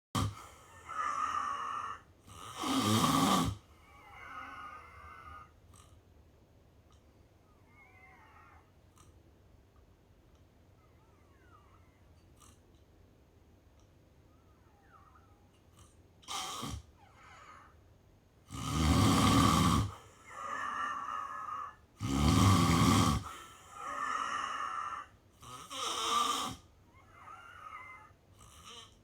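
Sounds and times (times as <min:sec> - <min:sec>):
person snoring: 0:00.2 - 0:05.9, 0:18.5 - 0:29.0.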